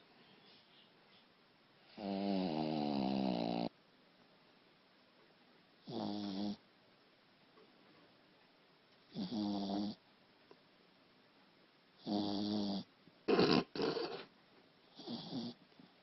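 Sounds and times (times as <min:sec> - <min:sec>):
dog snoring: 0:01.9 - 0:03.7, 0:05.8 - 0:06.6, 0:09.1 - 0:10.0, 0:12.0 - 0:14.3, 0:14.9 - 0:15.6.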